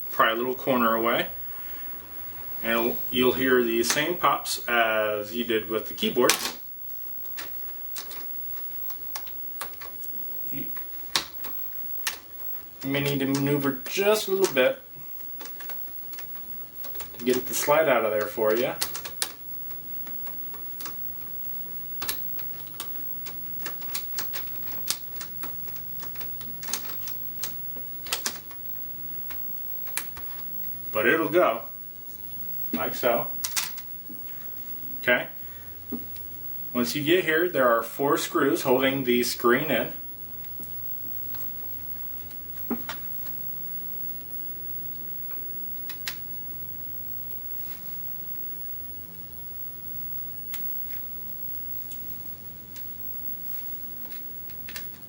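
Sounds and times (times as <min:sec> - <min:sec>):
faint steady hum: 0:00.0 - 0:55.0
plastic parts rubbing: 0:06.0 - 0:36.7.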